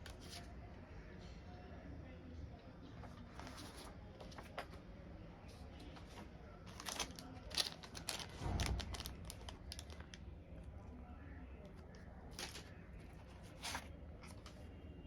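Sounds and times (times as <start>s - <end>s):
packaging crinkling and rustling: 6.0s - 10.2s, 11.9s - 14.6s.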